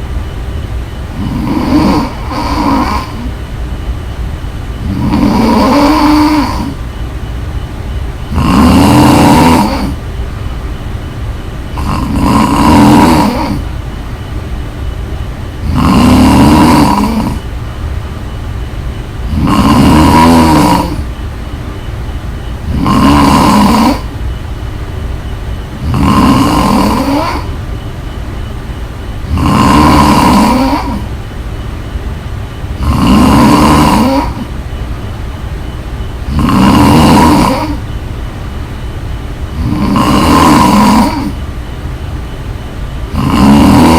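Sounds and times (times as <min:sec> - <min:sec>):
woman snoring loudly: 0:01.2 - 0:03.3, 0:04.8 - 0:06.8, 0:08.3 - 0:10.0, 0:11.7 - 0:13.7, 0:15.6 - 0:17.4, 0:19.3 - 0:21.1, 0:22.7 - 0:24.2, 0:25.8 - 0:27.6, 0:29.2 - 0:31.1, 0:32.8 - 0:34.5, 0:36.3 - 0:37.8, 0:39.5 - 0:41.4, 0:43.1 - 0:43.9.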